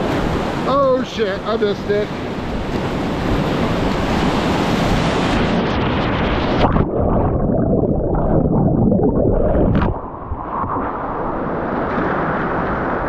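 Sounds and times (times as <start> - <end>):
whitewater rushing and crashing: 0.0 - 6.8.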